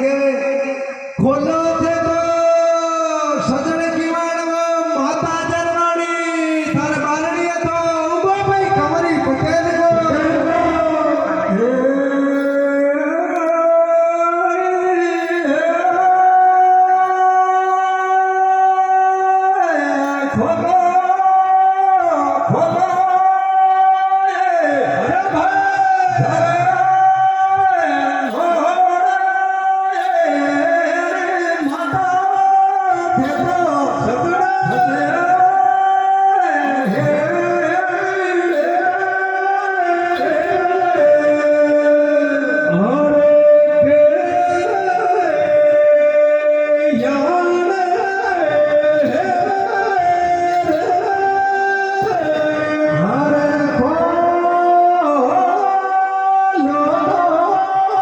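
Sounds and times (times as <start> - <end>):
man singing folk song: 0.0 - 58.0.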